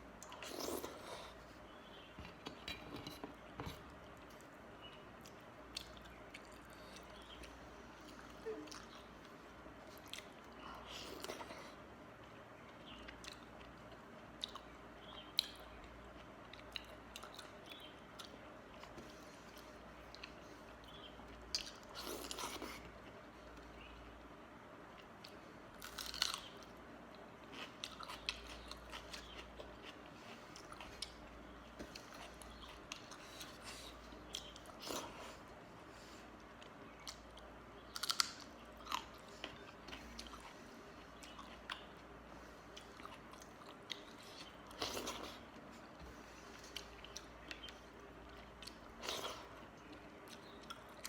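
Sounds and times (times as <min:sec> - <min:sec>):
person chewing: 0:25.0 - 0:26.5, 0:36.4 - 0:51.0.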